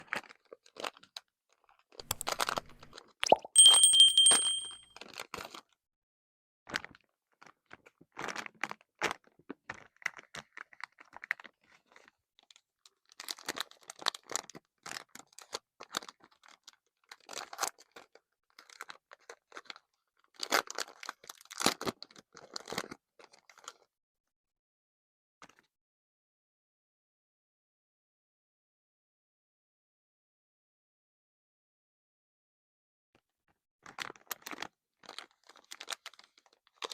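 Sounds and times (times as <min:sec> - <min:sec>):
high-pitched steady tone: 0:03.2 - 0:04.8
plastic packaging crinkling and tearing: 0:34.1 - 0:36.8.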